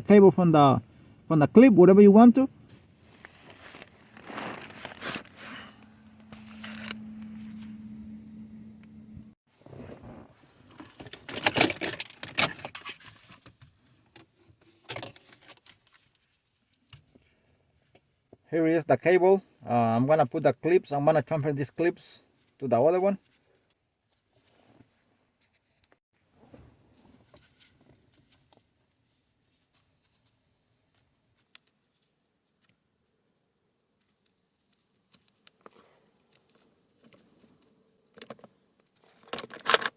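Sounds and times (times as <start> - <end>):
cable and plastic clip rattling: 10.7 - 13.4, 38.2 - 39.9.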